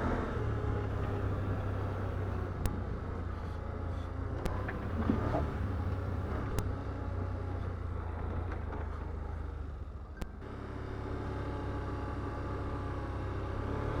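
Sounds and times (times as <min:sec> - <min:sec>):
atv engine running: 0:00.0 - 0:02.9, 0:04.4 - 0:07.4.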